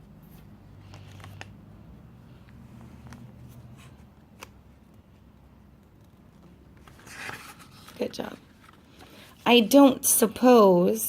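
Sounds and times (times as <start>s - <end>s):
paper page rustling: 0.8s - 1.5s, 6.0s - 9.4s.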